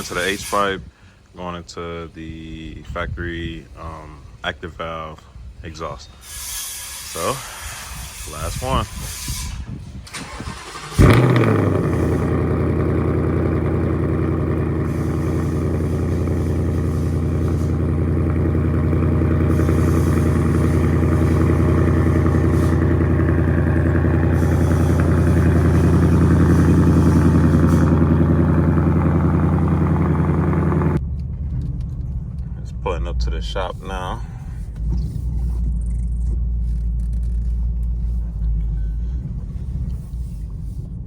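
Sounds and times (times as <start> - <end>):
car engine starting and idling: 10.0 - 41.0.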